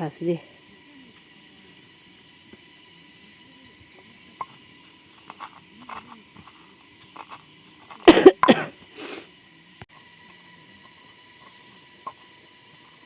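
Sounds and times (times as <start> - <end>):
person coughing: 8.0 - 9.2.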